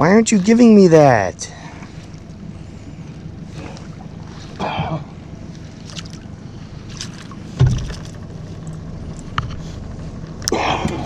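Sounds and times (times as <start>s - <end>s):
low rumble of water and wind: 0.0s - 11.0s
sharp thump: 7.6s - 8.1s.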